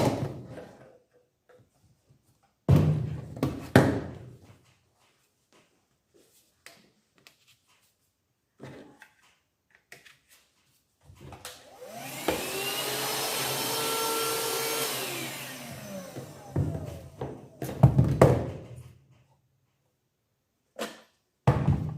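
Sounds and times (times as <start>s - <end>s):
handheld vacuum cleaner whining: 11.4s - 18.1s.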